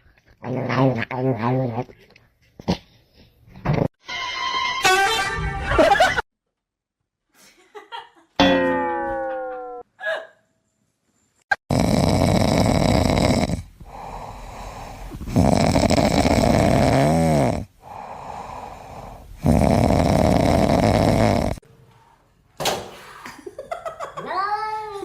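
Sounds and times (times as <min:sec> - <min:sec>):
pet snoring: 0:11.6 - 0:21.6.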